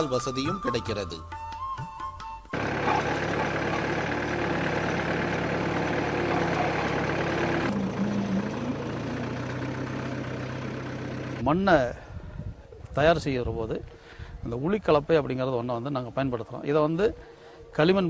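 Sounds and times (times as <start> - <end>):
tractor engine running: 2.5 - 11.6.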